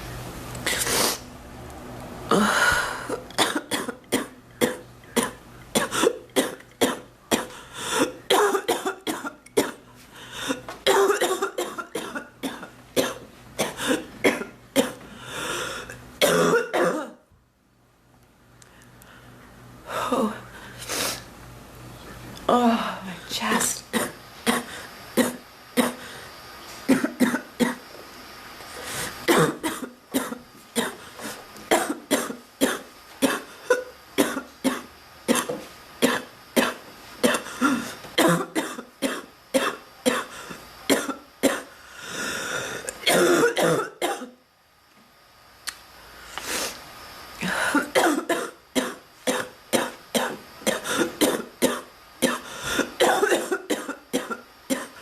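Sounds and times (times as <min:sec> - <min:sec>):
woman coughing: 0:02.3 - 0:09.8, 0:10.5 - 0:15.0, 0:16.2 - 0:17.2, 0:23.9 - 0:26.0, 0:26.9 - 0:27.8, 0:29.3 - 0:31.0, 0:31.7 - 0:41.7, 0:43.0 - 0:44.4, 0:47.4 - 0:55.0.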